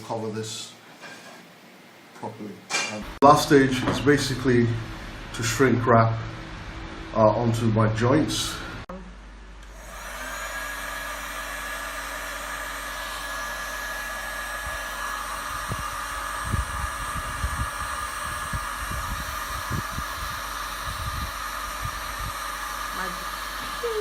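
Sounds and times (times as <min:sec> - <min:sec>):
heat gun blowing: 0:09.6 - 0:24.0.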